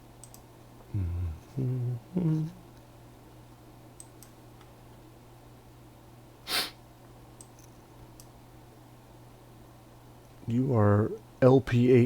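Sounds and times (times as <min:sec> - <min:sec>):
steady low hum: 0:00.0 - 0:12.0
faint clicks: 0:00.2 - 0:00.5, 0:04.0 - 0:04.7
person sniffing: 0:06.4 - 0:06.8.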